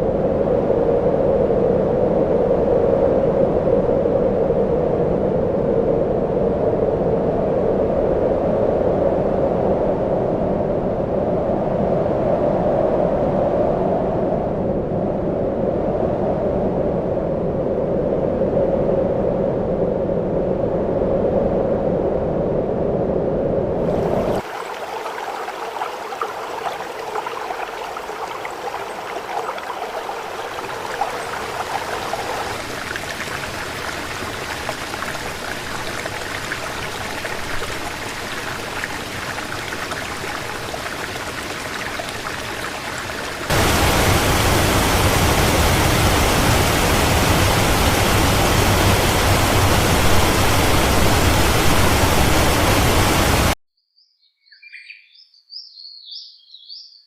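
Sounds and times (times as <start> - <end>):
running water rushing: 23.9 - 53.6.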